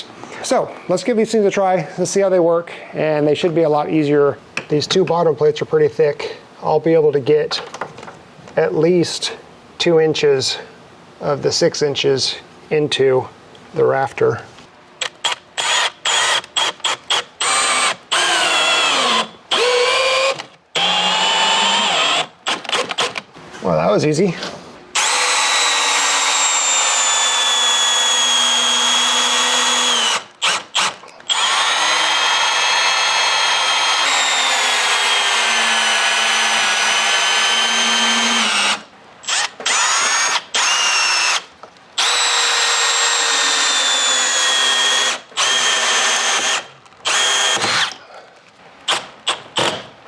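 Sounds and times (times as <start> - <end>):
power drill driving screws into wood: 15.0 - 23.3, 25.0 - 48.0, 48.9 - 49.9.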